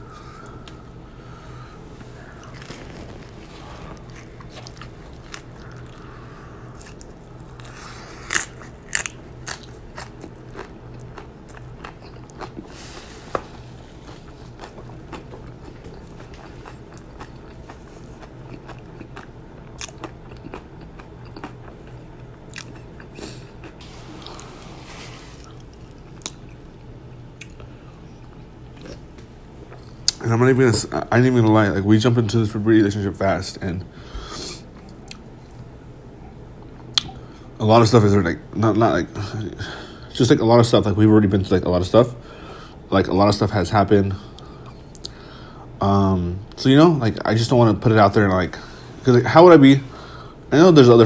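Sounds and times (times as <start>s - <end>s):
low steady hum: 0.0s - 51.0s
chewing crackles: 2.0s - 24.6s
crunchy taco shell crunching: 6.7s - 24.6s.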